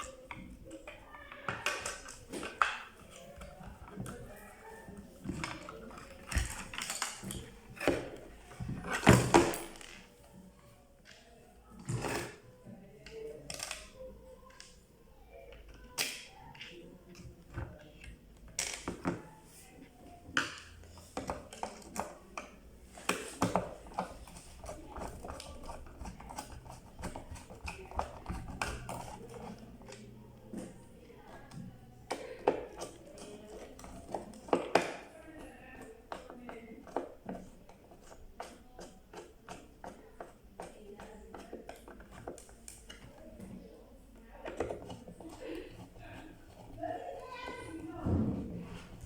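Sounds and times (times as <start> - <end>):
clicks and taps of small parts: 15.5 - 19.2.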